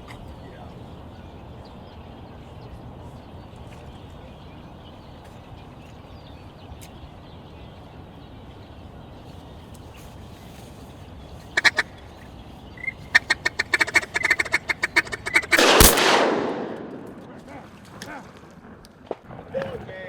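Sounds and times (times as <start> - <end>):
mallard quacks: 11.6 - 12.0, 12.8 - 15.6
shotgun shot: 15.6 - 17.5.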